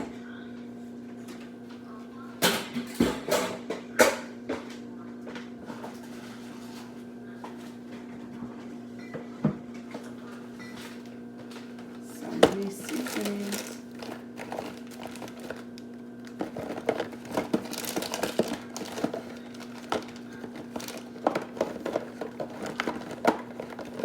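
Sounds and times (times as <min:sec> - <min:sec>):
steady hum: 0:06.8 - 0:24.0.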